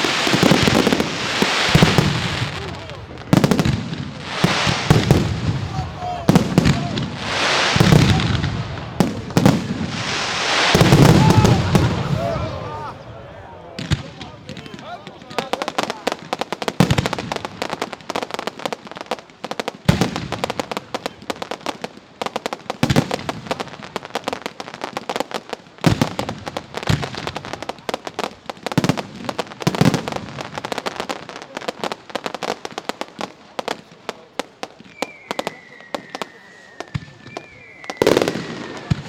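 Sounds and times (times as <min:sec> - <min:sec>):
fireworks crackling: 0:00.0 - 0:39.0
falling firework whistle: 0:04.4 - 0:13.0, 0:34.8 - 0:39.0.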